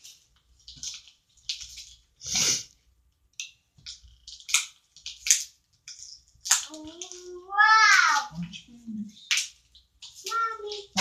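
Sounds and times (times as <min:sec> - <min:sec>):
packaging rustling and crinkling: 0:00.0 - 0:02.2.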